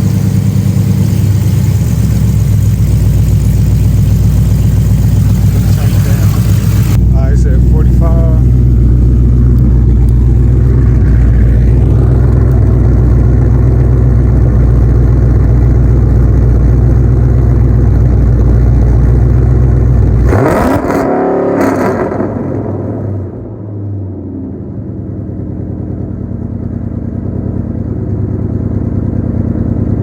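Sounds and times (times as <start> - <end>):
car engine on rev limiter: 0.0 - 15.3, 18.8 - 23.6
exhaust pops: 0.0 - 23.2.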